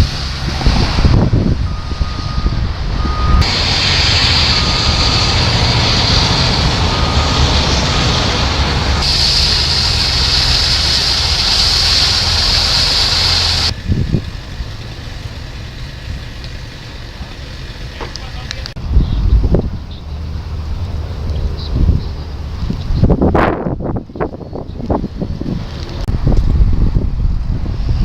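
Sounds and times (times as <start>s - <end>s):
heavy vehicle engine rumbling: 0.0s - 28.0s
backup alarm beeping: 1.6s - 9.4s
loud steady hiss: 3.4s - 18.8s.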